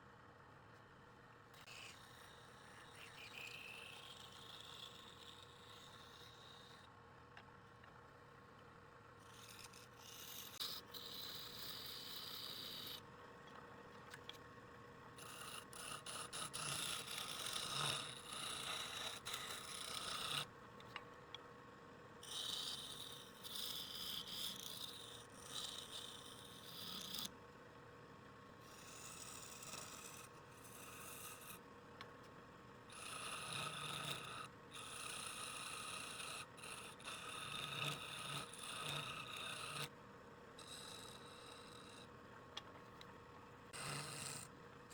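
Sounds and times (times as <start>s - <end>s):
tool scraping spinning wood: 15.2s - 20.4s.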